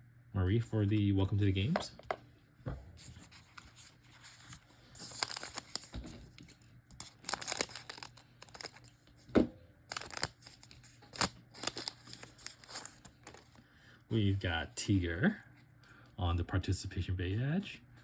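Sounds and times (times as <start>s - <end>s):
cards sliding and rustling: 3.0s - 9.3s, 9.9s - 13.6s
foil card pack crinkling: 3.2s - 9.2s, 9.9s - 13.6s.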